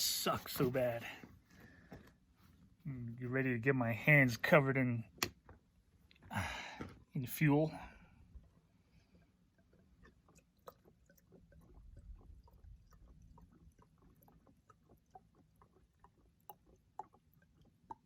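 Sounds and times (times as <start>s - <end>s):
fuel pouring and gurgling: 7.8s - 18.0s.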